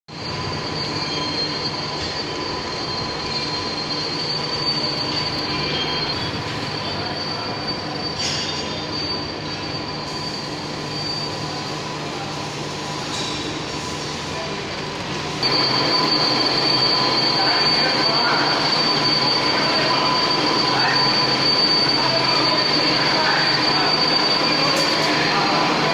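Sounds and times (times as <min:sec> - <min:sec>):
high-pitched machine whine: 0:00.1 - 0:25.9
metal machining noise: 0:12.8 - 0:25.9.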